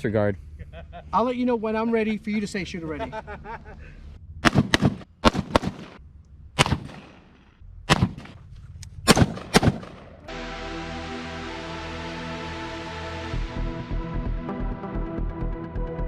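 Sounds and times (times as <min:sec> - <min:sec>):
gunshots with echo: 0:04.4 - 0:06.0, 0:06.6 - 0:10.3
music: 0:10.3 - 0:16.0.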